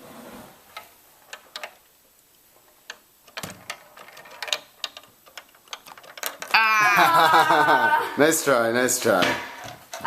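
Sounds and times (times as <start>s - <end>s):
plastic toy pieces clicking: 2.9s - 7.5s
person crying out loudly: 6.5s - 8.2s.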